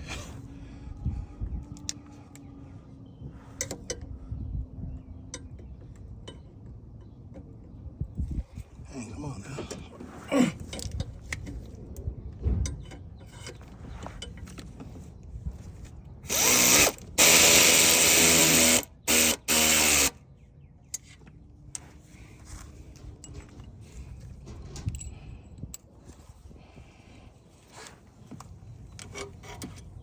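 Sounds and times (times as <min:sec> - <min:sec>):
pneumatic tool running bolts: 0:16.2 - 0:20.2
light metal clinks: 0:24.5 - 0:25.9.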